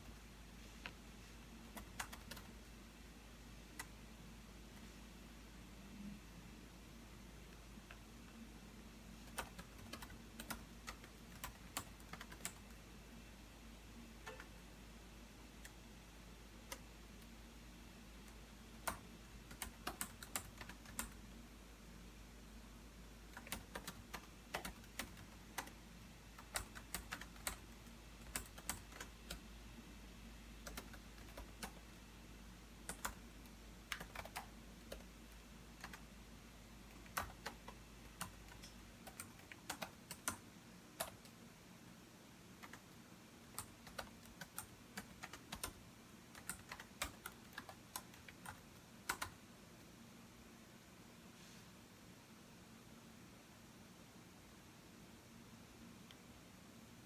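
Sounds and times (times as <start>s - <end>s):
typing on computer keyboard: 1.7s - 2.5s, 9.3s - 12.8s, 14.2s - 14.5s, 18.8s - 21.2s, 23.3s - 25.8s, 26.4s - 29.4s, 30.6s - 31.9s, 32.9s - 35.1s, 35.8s - 36.0s, 36.9s - 40.4s, 41.0s - 41.4s, 42.6s - 49.4s.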